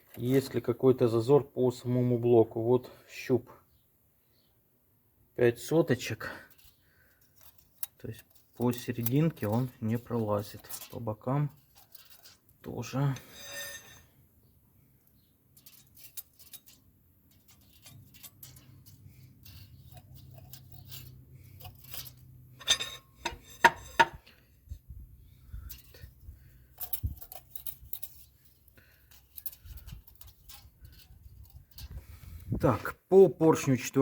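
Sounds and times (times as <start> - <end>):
metal tools clinking: 6.4 - 14.1, 15.5 - 24.4, 25.5 - 32.2.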